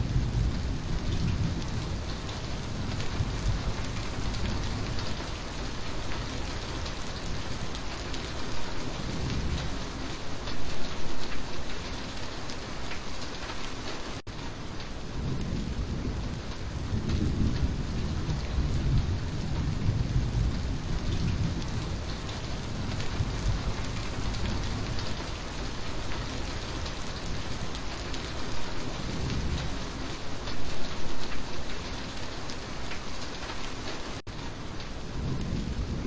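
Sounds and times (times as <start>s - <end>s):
low rumble of thunder: 0.0s - 11.9s, 14.3s - 32.3s, 33.4s - 36.0s
steady rainfall: 0.0s - 36.0s.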